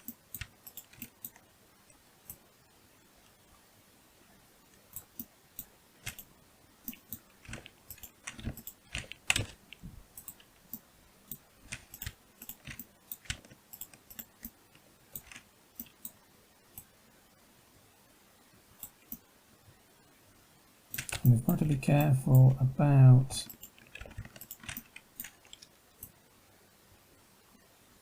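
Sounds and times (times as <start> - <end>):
computer mouse clicks: 0.0 - 1.4, 4.7 - 16.9, 18.8 - 19.2, 20.9 - 21.3, 23.4 - 26.2
keyboard typing: 0.0 - 1.4, 4.8 - 16.2, 20.9 - 22.6, 23.4 - 26.2.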